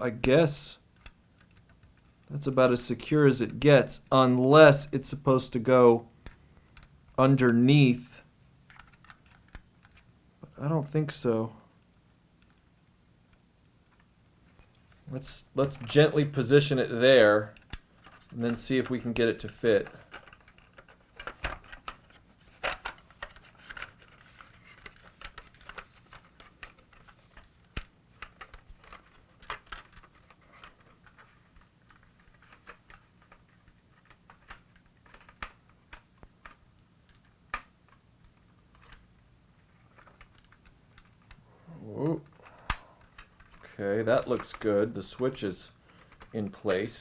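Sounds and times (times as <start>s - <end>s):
plastic parts clicking and tapping: 0.9s - 2.3s, 6.2s - 7.2s, 8.7s - 10.1s, 17.5s - 39.1s, 39.7s - 41.4s, 42.0s - 47.0s.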